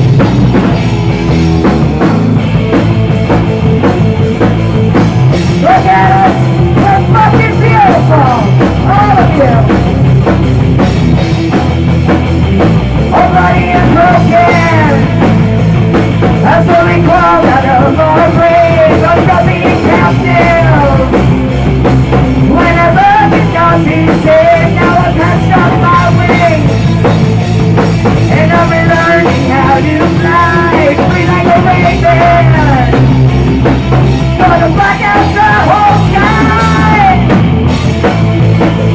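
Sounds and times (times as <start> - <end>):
drums: 0.0 - 38.9
live rock band playing: 0.0 - 38.9
person singing: 5.5 - 9.9, 13.1 - 15.4, 16.3 - 21.3, 22.4 - 27.2, 28.3 - 33.1, 34.4 - 37.4.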